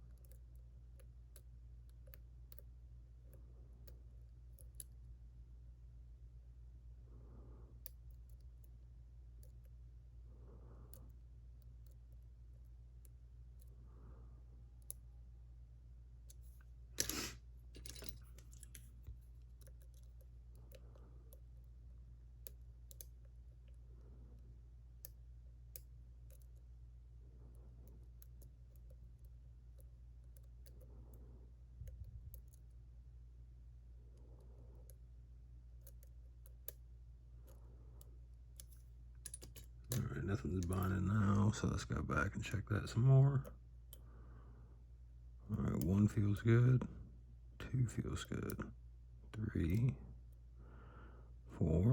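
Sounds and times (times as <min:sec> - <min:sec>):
steady low hum: 0:00.0 - 0:51.9
lock pick clicks and scrapes: 0:17.0 - 0:19.0, 0:38.6 - 0:40.0.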